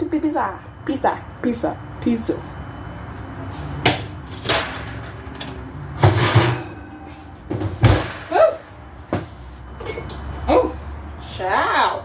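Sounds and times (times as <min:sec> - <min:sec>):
kitchen knocks and clatters: 0:03.8 - 0:08.4.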